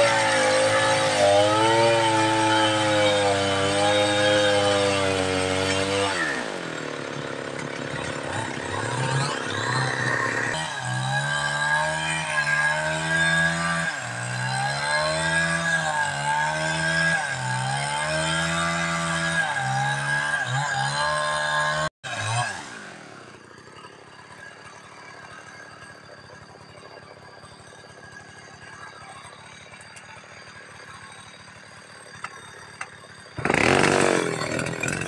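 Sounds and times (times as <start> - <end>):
chainsaw cutting at high revs: 0.0 - 26.5, 27.5 - 35.0.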